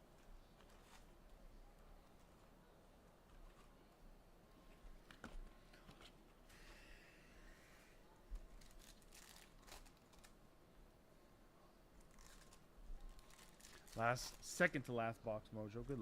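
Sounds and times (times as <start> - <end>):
plastic wrapping tearing and crinkling: 8.4 - 10.4, 12.0 - 14.6.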